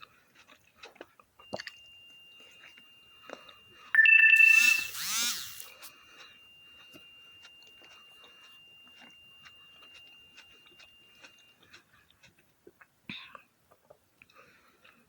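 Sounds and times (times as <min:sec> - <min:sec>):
chewing grapes: 0:00.0 - 0:01.8, 0:09.8 - 0:15.0
faint high tone: 0:04.0 - 0:05.7
ringing sound: 0:04.0 - 0:11.5.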